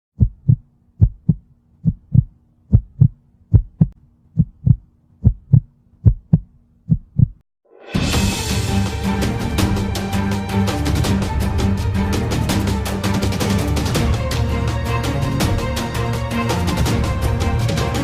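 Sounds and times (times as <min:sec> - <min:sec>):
heartbeat double thumps: 0:00.2 - 0:07.4
music: 0:07.6 - 0:18.0.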